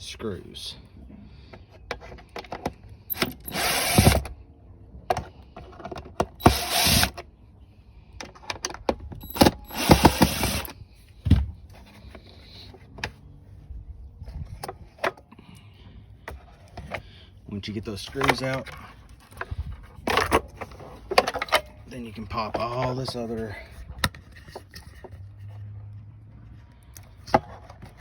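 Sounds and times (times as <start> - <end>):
clicks and knocks of handling parts: 1.5 - 4.4, 5.0 - 7.3, 8.1 - 13.2, 18.0 - 28.0
cordless drill driving screws: 3.1 - 4.4, 6.4 - 7.2, 9.2 - 10.8.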